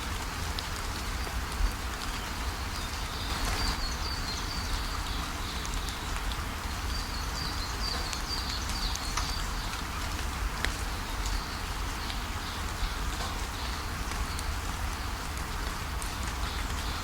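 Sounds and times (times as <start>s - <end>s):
waterfall rushing: 2.9s - 4.1s.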